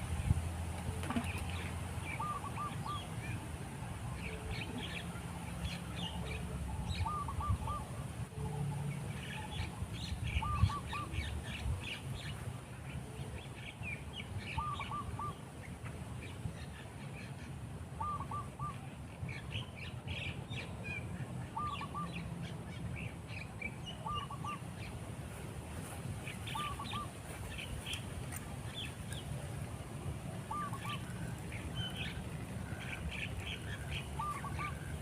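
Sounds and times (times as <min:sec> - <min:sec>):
small birds chirping: 0:30.5 - 0:35.0.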